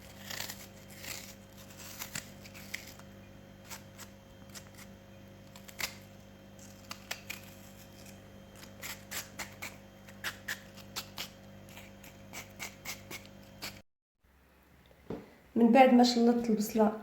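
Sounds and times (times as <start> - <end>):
knife chopping onion: 5.6 - 13.8.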